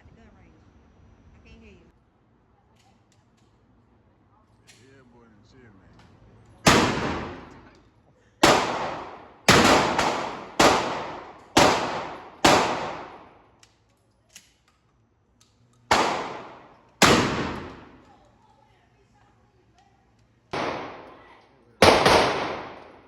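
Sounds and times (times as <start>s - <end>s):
echoing gunshots: 6.6s - 7.7s, 8.4s - 13.4s, 15.9s - 18.1s, 20.5s - 23.0s.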